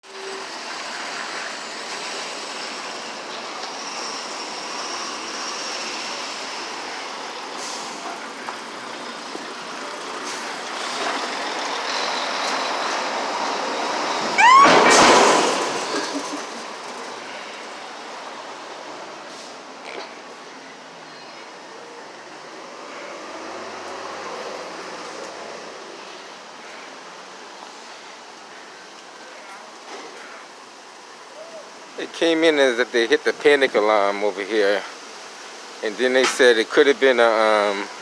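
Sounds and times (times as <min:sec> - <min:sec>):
city street traffic: 0:00.0 - 0:38.0
heavy vehicle air hiss: 0:00.1 - 0:20.4, 0:21.0 - 0:38.0
heavy vehicle brake squeal: 0:13.5 - 0:16.3.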